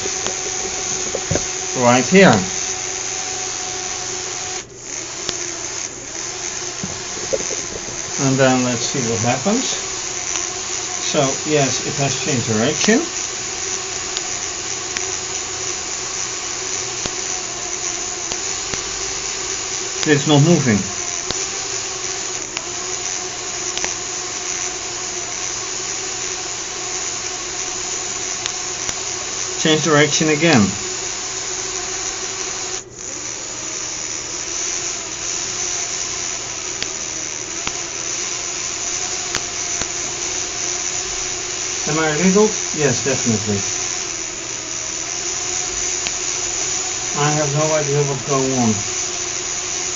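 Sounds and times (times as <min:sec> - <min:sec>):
small electric motor whining: 0:00.0 - 0:49.9
faint clicks: 0:04.4 - 0:10.8, 0:21.0 - 0:24.7, 0:31.8 - 0:43.0, 0:43.6 - 0:47.1.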